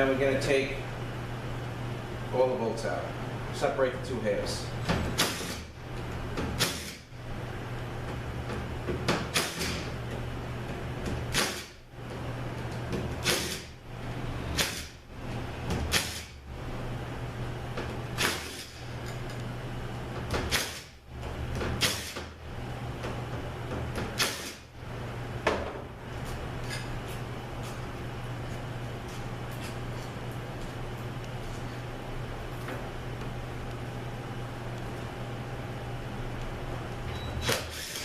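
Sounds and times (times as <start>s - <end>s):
steady low hum: 0.0s - 38.0s.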